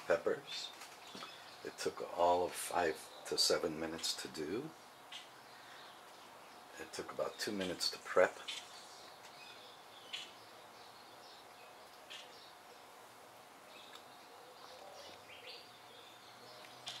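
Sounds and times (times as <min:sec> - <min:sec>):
background hiss: 0:00.0 - 0:17.0
faint bird chirps: 0:13.6 - 0:17.0.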